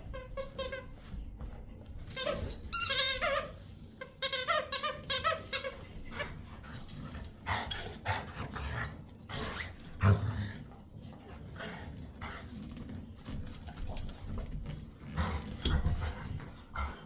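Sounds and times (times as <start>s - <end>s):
squeaky toy squeaking: 2.2s - 5.9s.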